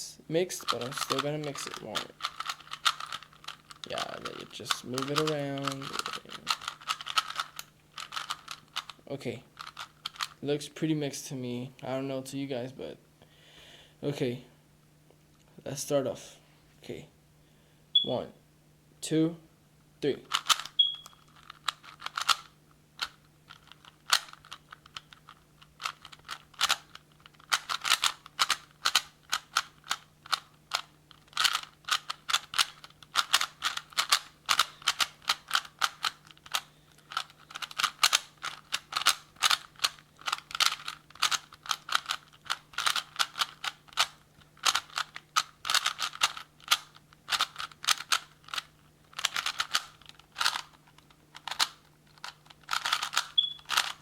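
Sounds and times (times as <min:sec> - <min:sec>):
puzzle cube plastic clicks: 0:00.6 - 0:09.0, 0:09.6 - 0:10.4, 0:20.3 - 0:54.0.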